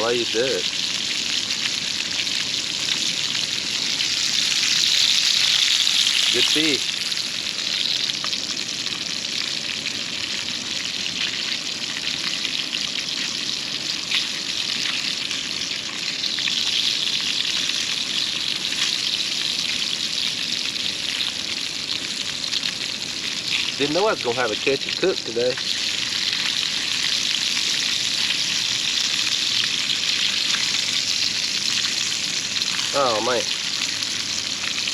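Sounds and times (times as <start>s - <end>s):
fish sizzling in a skillet: 0.0s - 34.9s.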